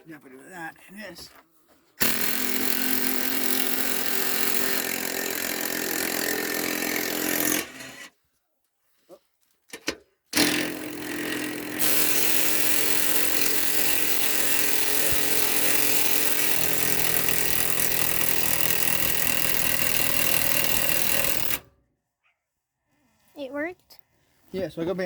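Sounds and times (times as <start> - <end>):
power tool running: 2.0 - 8.1, 10.4 - 21.7.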